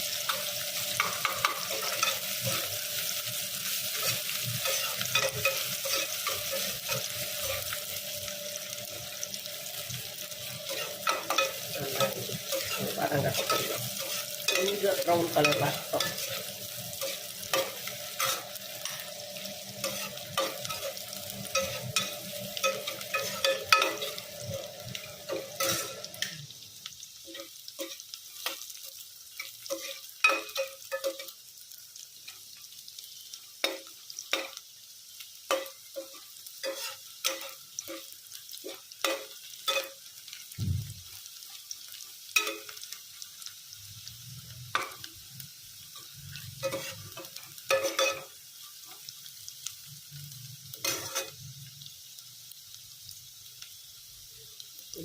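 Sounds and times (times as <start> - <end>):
light sizzle: 0.0 - 55.0
spoon clinking and scraping pot: 0.3 - 2.7, 3.9 - 7.8, 10.4 - 19.2, 19.8 - 26.3, 29.4 - 31.3, 35.5 - 38.1, 46.6 - 48.3.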